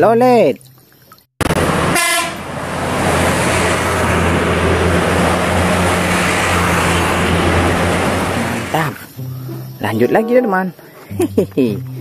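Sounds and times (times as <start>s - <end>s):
short horn toot: 1.9s - 2.4s.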